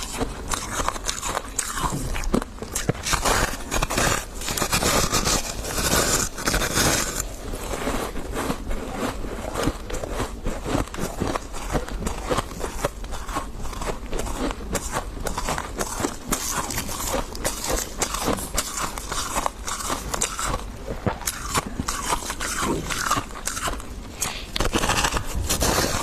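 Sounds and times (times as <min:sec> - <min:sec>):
person chewing crunchy frost: 0:00.0 - 0:26.0.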